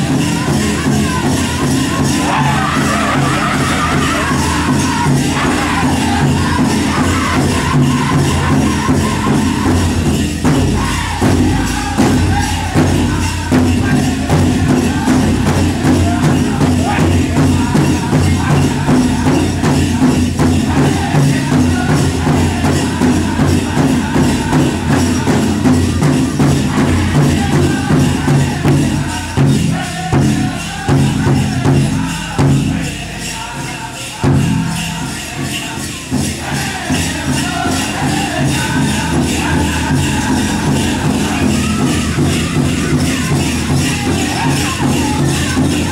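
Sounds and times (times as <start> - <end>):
drum group singing: 0.0 - 45.9
leg bells jingling: 0.0 - 45.9
steady drumbeat: 0.0 - 45.9.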